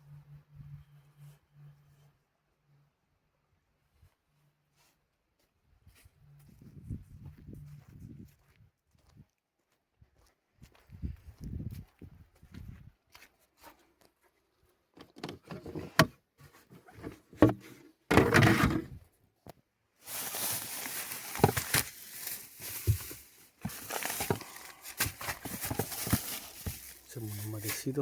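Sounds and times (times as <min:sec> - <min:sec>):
rustling and crackling: 0:20.0 - 0:28.0.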